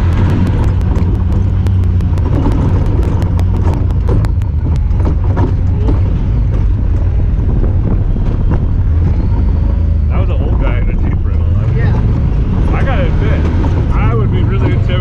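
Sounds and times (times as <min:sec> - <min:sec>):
rapid even ticking: 0:00.0 - 0:07.1
engine running low drone: 0:00.0 - 0:15.0.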